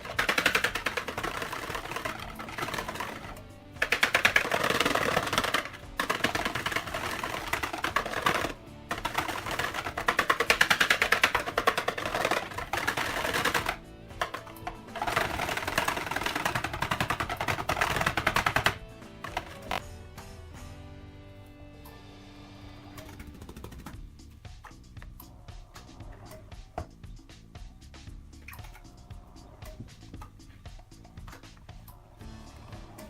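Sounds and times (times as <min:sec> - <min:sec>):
rapid rattling clicks: 0:00.0 - 0:19.8.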